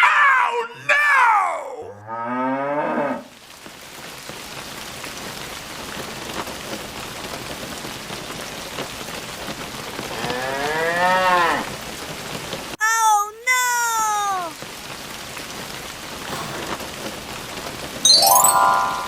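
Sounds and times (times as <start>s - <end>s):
cow mooing: 1.9s - 3.3s, 16.2s - 16.9s
steady rain falling: 2.8s - 19.0s
pitched animal call: 16.2s - 17.0s.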